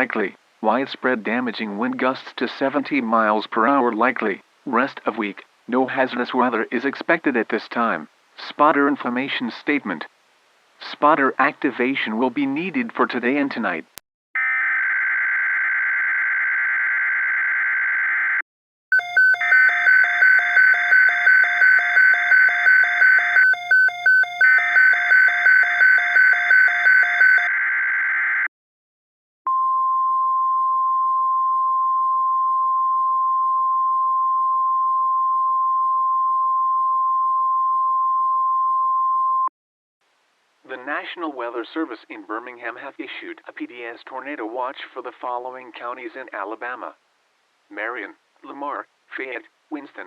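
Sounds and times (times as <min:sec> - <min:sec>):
beeping: 0:18.9 - 0:27.5
steady alarm tone: 0:18.9 - 0:27.5.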